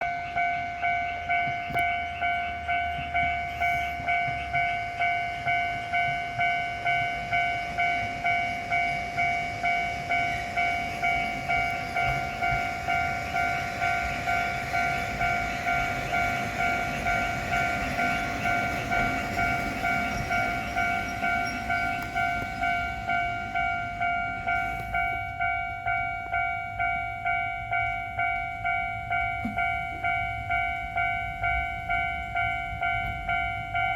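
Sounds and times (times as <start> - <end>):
level-crossing alarm bell: 0.0 - 33.9
train rumble: 0.0 - 33.9.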